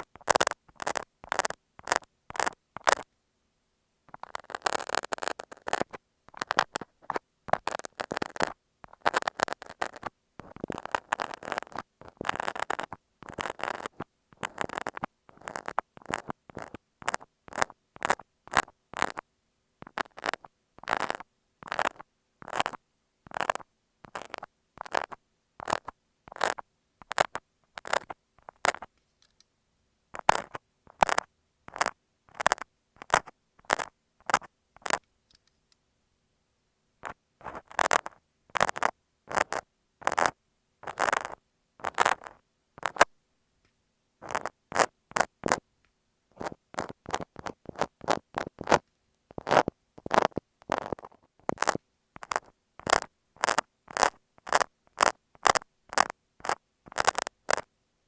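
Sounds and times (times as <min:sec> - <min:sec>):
knife blade scratching tape: 0:10.6 - 0:19.2.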